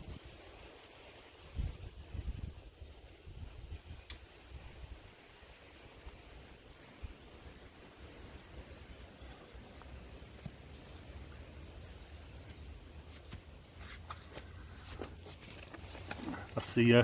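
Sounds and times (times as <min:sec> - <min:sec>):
high bird calls: 0:07.3 - 0:12.8.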